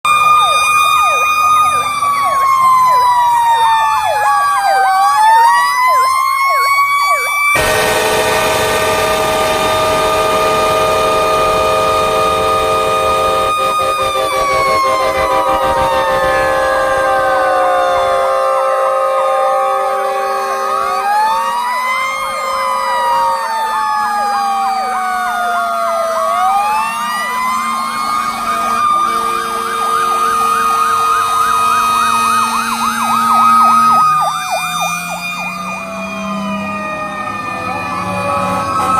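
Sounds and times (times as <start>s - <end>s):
wailing siren: 0.0s - 38.9s
electronic siren yelping: 0.1s - 38.9s
air horn chords: 7.6s - 20.9s.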